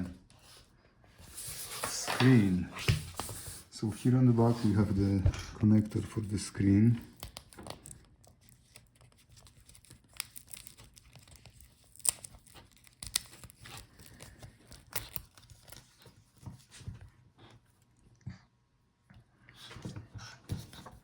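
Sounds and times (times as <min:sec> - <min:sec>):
crackling and peeling rustle: 0:06.1 - 0:16.4.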